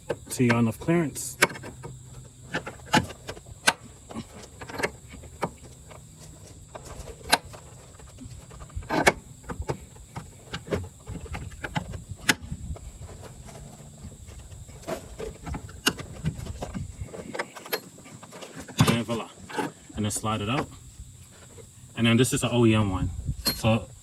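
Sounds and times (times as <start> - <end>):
pry tool metallic clicks and knocks: 1.3 - 5.8, 23.4 - 23.7.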